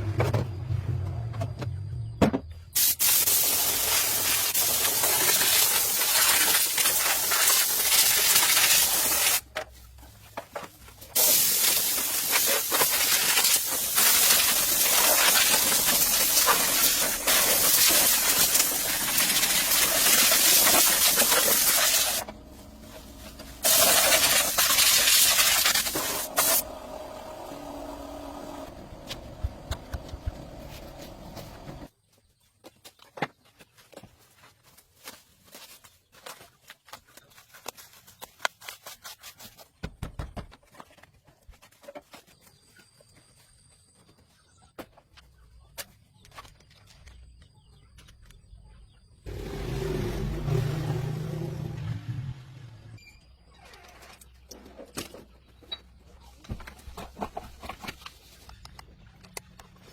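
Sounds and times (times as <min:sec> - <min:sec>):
pressurized spray hissing: 0:02.8 - 0:09.4, 0:11.2 - 0:22.3, 0:23.5 - 0:28.6.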